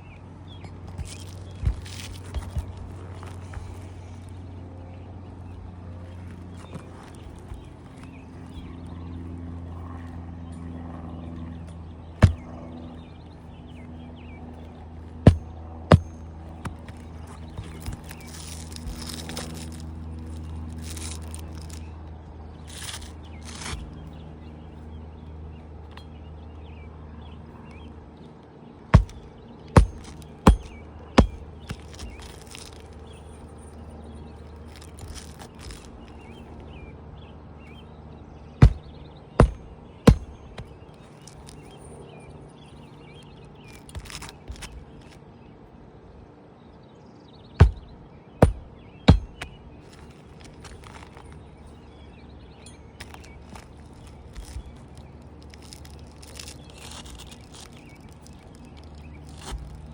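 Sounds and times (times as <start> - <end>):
hammer striking nails: 12.2 - 12.4, 29.0 - 29.2, 29.8 - 32.6, 38.6 - 40.7, 47.6 - 49.5.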